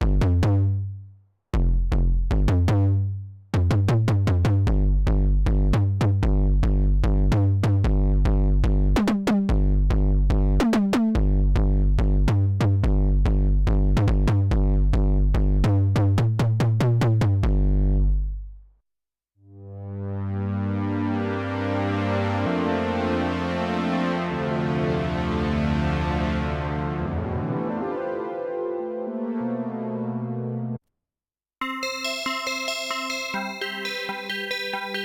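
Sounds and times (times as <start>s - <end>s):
synth bass pattern: 31.6s - 35.0s.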